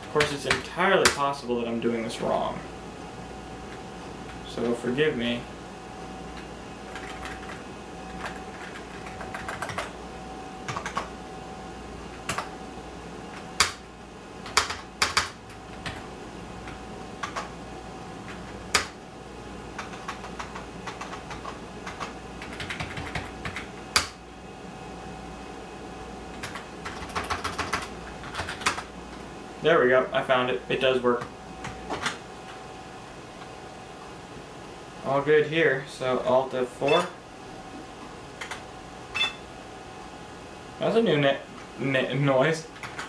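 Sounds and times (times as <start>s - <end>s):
faint hum: 0.0s - 43.0s
computer keyboard typing: 6.4s - 10.0s, 10.6s - 11.1s, 12.1s - 12.5s, 13.3s - 17.5s, 18.2s - 19.0s, 19.8s - 24.2s, 26.3s - 28.9s, 42.8s - 43.0s.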